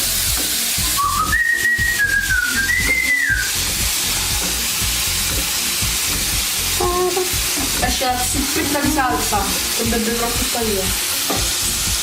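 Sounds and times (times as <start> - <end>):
oil sizzling in a frying pan: 0.0 - 12.0
person whistling: 0.8 - 3.6.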